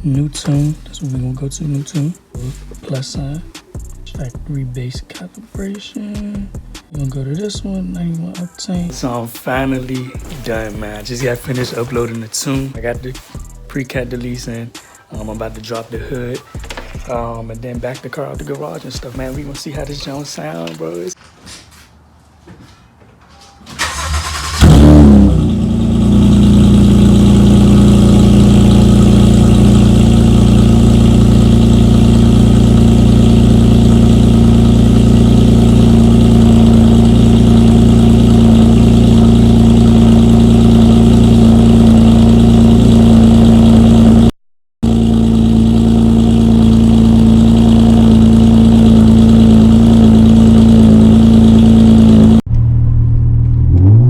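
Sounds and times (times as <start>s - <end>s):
car engine starting and idling: 8.8s - 18.0s, 23.7s - 54.0s.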